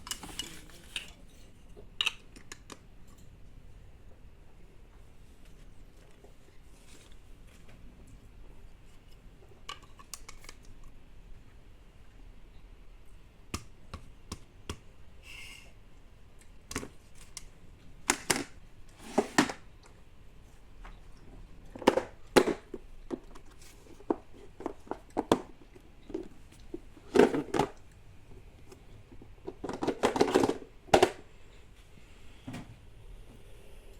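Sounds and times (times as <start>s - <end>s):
plastic toys clicking and knocking: 0.0s - 3.2s, 9.6s - 10.9s, 18.1s - 19.6s, 21.7s - 27.8s, 29.1s - 31.3s.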